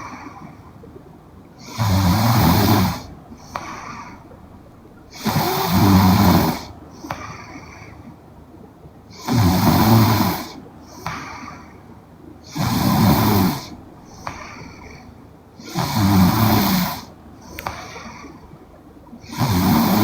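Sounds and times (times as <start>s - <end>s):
soft breathing: 0.0s - 8.4s, 9.1s - 20.0s
woman snoring: 1.6s - 4.1s, 5.1s - 7.2s, 9.2s - 10.6s, 12.5s - 14.9s, 15.6s - 18.1s, 19.2s - 20.0s.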